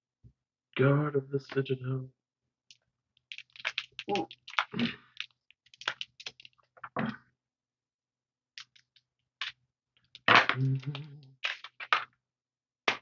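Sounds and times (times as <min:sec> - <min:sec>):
trading cards clicking and snapping: 0:03.2 - 0:06.6, 0:08.6 - 0:12.1
cards rustling: 0:03.2 - 0:06.7.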